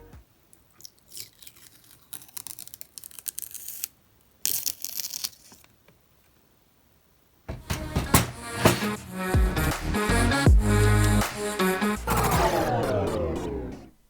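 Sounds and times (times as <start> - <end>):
music: 0.0 - 0.2, 7.6 - 13.9
packaging being torn and crinkled: 1.1 - 5.9.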